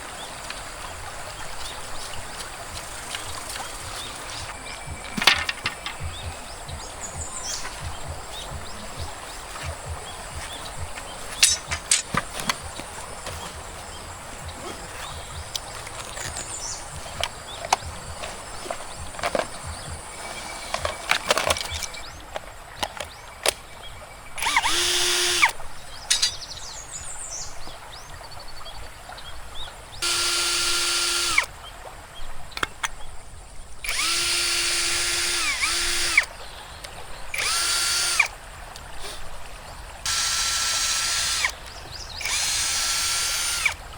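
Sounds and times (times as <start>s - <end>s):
handling knocks and clicks: 2.4s - 23.7s, 25.4s - 26.5s, 32.5s - 33.0s
power drill spinning: 9.4s - 14.0s, 15.0s - 22.0s, 24.4s - 25.6s, 30.0s - 31.5s, 33.8s - 36.3s, 37.4s - 38.3s, 40.1s - 41.6s, 42.2s - 43.8s.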